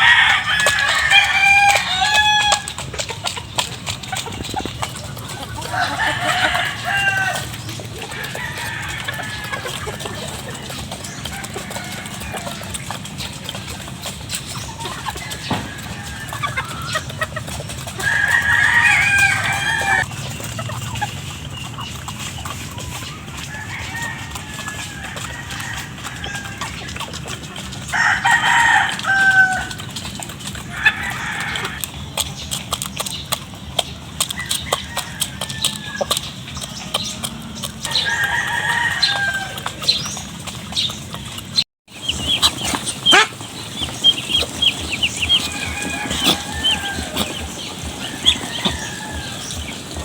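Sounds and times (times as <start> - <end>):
rooster crowing: 0.0 - 2.8, 5.6 - 12.8, 15.1 - 17.0, 17.9 - 20.1, 23.4 - 27.0, 27.9 - 30.0, 30.7 - 31.8, 34.4 - 36.2, 37.9 - 40.0, 42.0 - 50.0
chickens clucking: 0.0 - 50.0
chicken call: 14.7 - 21.1, 27.9 - 30.0, 41.9 - 50.0.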